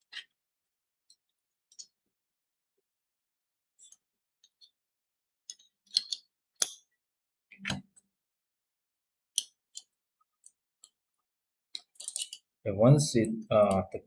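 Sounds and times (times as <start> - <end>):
small metal parts clinking: 11.8 - 12.4.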